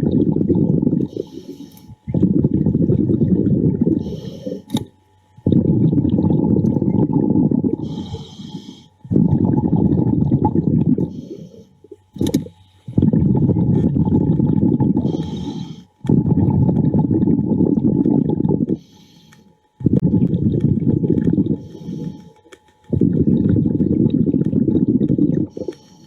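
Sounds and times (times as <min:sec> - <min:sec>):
exhaled bubbles rumbling: 0:00.0 - 0:18.9, 0:19.8 - 0:26.0
regulator inhale hiss: 0:01.0 - 0:02.0, 0:04.0 - 0:04.8, 0:07.8 - 0:09.0, 0:11.0 - 0:11.9, 0:15.0 - 0:16.0, 0:18.7 - 0:19.6, 0:21.6 - 0:22.6, 0:25.5 - 0:26.0.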